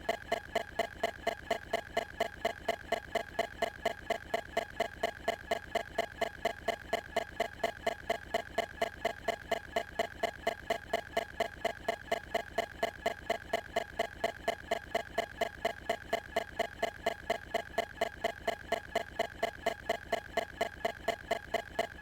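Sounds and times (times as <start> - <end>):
steady ticking: 0.0 - 22.0.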